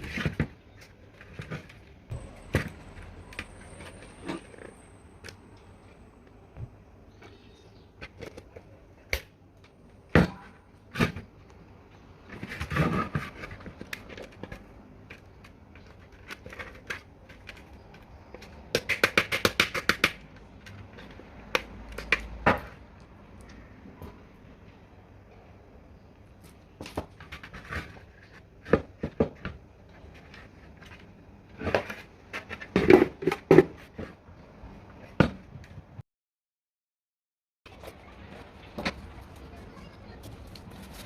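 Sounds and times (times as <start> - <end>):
scraping and rustling: 26.4 - 34.2, 37.7 - 41.0.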